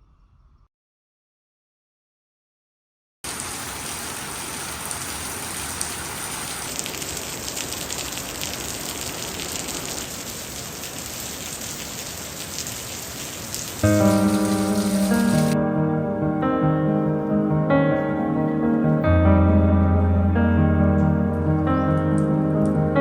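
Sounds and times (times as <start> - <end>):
heavy rain pouring: 3.3 - 15.6, 20.0 - 23.0.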